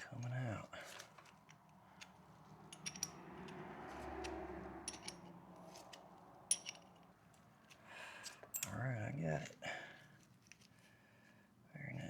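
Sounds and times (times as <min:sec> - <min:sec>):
metal clicks of chain tool: 0:01.3 - 0:08.8.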